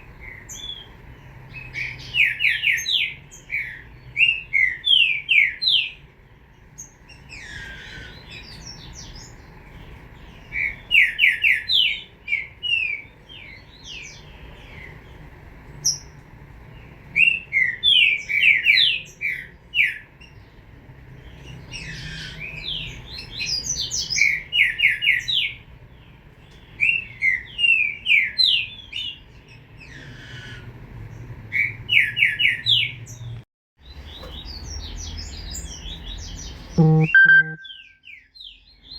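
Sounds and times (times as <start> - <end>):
bird singing quick clear notes: 36.8 - 37.8.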